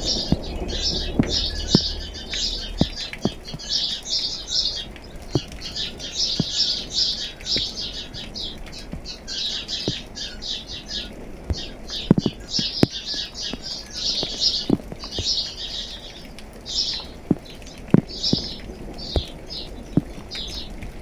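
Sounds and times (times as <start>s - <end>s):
sharp tick: 0.0s - 3.8s, 5.0s - 6.8s
small birds chirping: 0.0s - 21.0s.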